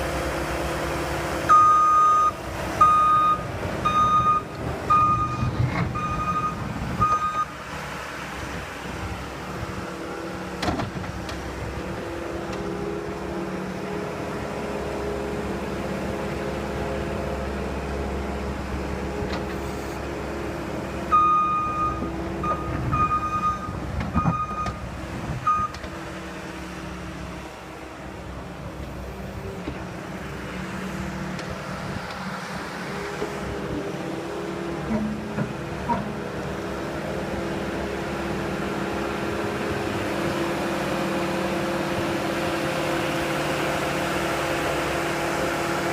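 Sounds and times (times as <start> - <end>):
skid steer engine running: 0.0 - 45.9
backup alarm beeping: 1.5 - 7.5, 21.1 - 24.8.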